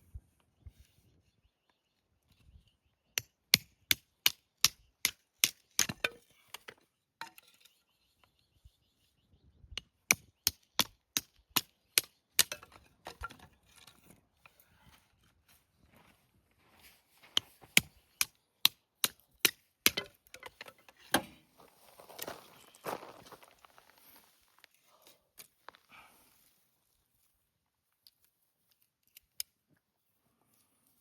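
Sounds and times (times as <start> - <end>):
wood being chopped: 17.8 - 21.4.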